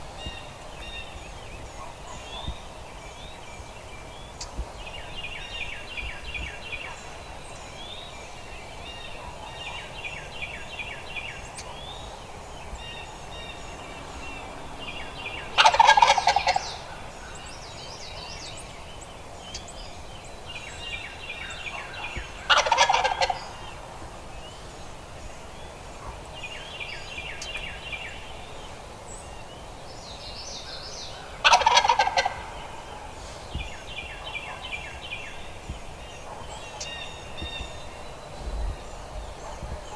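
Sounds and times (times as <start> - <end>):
small bird calls: 0.0 - 39.9
turkey gobbling: 14.9 - 17.4, 21.6 - 23.9, 31.3 - 33.3.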